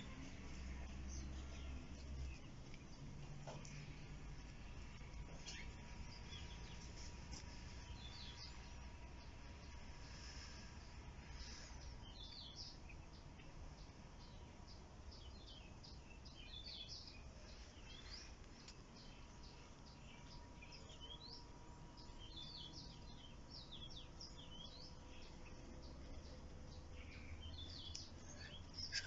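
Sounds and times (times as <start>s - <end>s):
birds chirping: 0.0s - 29.0s.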